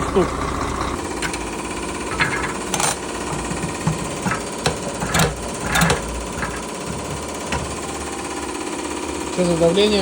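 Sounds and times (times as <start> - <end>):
diesel engine running rough: 0.0 - 10.0
sharp engine knocks: 1.1 - 8.4.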